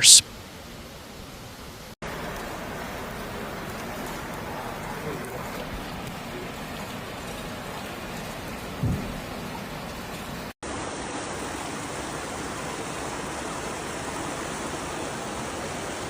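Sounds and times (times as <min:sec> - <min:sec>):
rushing floodwater and rain: 0:00.4 - 0:16.0
low thump: 0:08.8 - 0:09.1.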